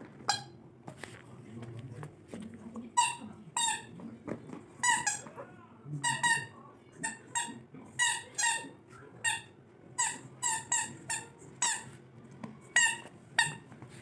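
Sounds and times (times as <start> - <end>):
squeaky dog toy squeaking: 0.2 - 0.6, 3.0 - 3.9, 4.8 - 5.3, 6.0 - 11.9, 12.7 - 13.7.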